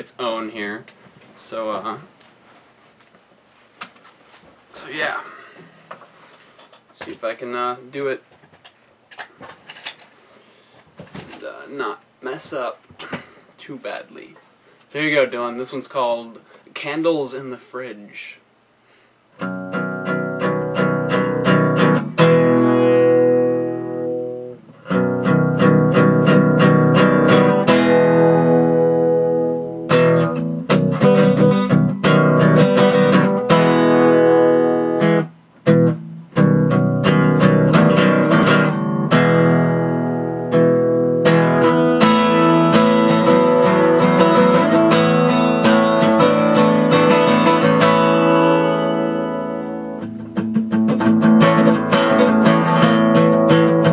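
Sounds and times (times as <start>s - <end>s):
guitar strumming and picking: 19.4s - 53.9s.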